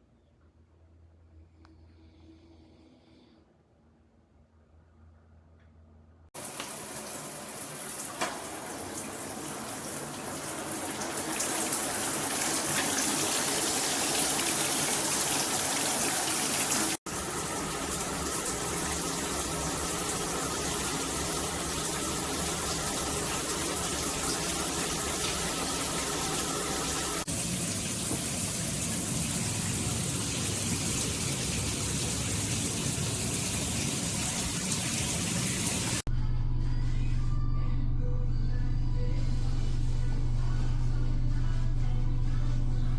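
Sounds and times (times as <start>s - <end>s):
shower water spraying: 6.4s - 36.1s.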